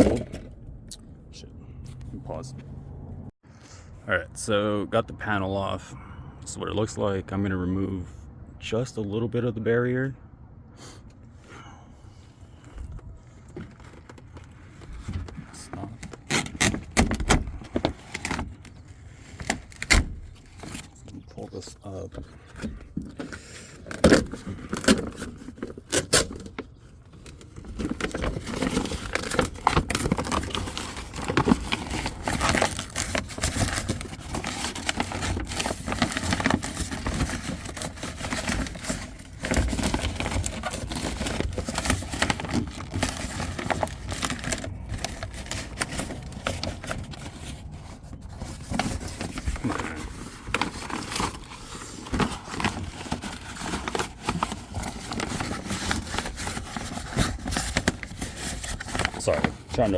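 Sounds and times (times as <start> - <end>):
plastic sheet crinkling and tearing: 22.4 - 59.9.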